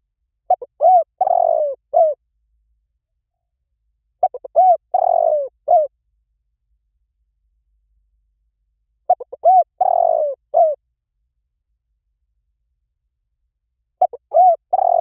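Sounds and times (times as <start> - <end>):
dove cooing: 0.5 - 2.2, 4.2 - 5.9, 9.1 - 10.8, 14.0 - 15.0.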